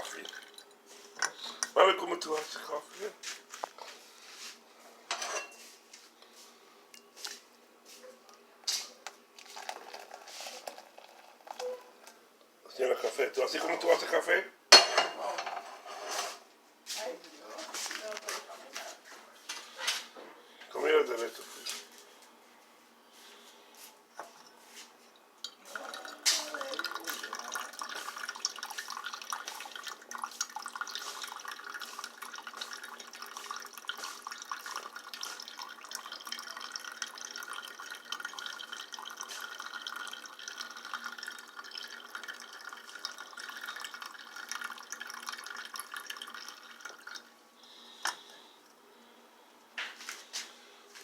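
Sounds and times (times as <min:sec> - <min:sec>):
coffee bubbling and sputtering: 0:00.0 - 0:02.6, 0:09.4 - 0:12.9, 0:25.4 - 0:48.9.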